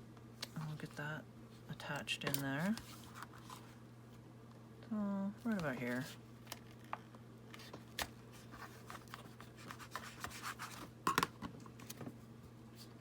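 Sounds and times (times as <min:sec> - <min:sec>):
steady low hum: 0:00.0 - 0:13.0
paper rustling: 0:07.5 - 0:10.9.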